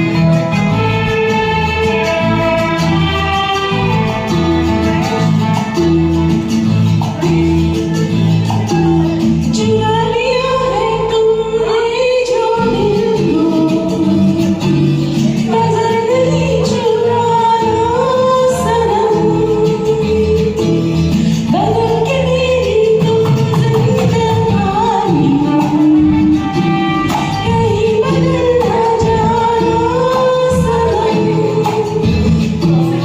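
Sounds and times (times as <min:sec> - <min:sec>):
karaoke backing track: 0:00.0 - 0:33.0
woman singing: 0:07.2 - 0:33.0.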